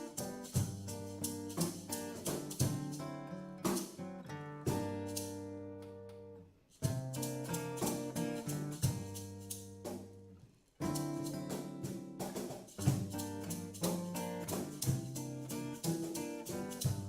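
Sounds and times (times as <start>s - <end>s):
drums: 0.0s - 4.0s, 4.6s - 5.4s, 6.8s - 10.2s, 10.8s - 17.0s
plucked guitar: 0.0s - 17.0s.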